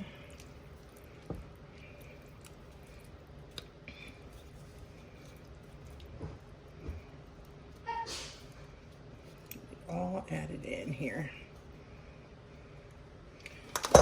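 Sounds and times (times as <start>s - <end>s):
liquid squishing and dripping: 0.0s - 9.9s, 11.5s - 14.0s.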